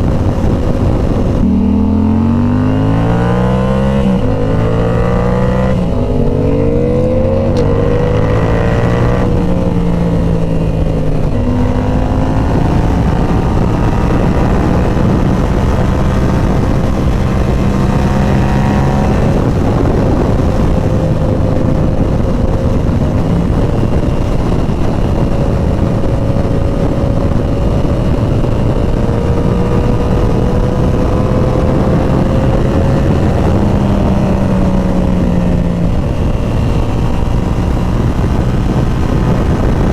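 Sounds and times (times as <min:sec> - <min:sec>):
motorcycle engine accelerating: 0:00.0 - 0:39.9
steady rushing noise: 0:00.0 - 0:39.9.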